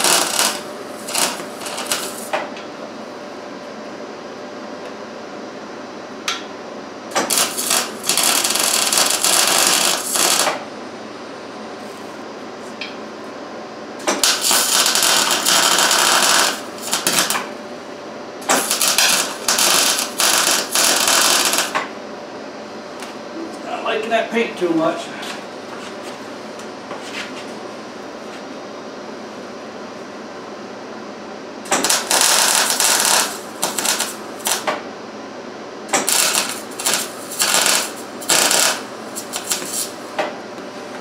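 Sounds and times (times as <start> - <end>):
welding arc crackling: 0.0 - 2.5, 7.1 - 10.6, 14.0 - 17.6, 18.4 - 21.9, 31.6 - 34.8, 35.9 - 40.1.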